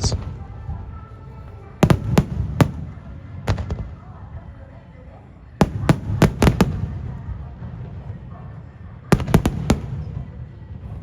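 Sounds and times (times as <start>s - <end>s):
fireworks banging: 5.6s - 7.4s, 9.1s - 10.3s.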